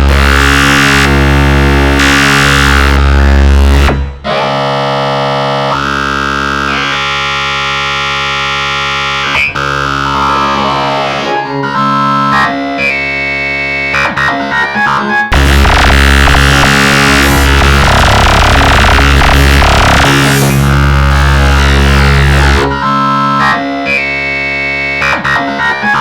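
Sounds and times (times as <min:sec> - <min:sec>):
dark synthesizer ringtone music: 0:09.0 - 0:26.0.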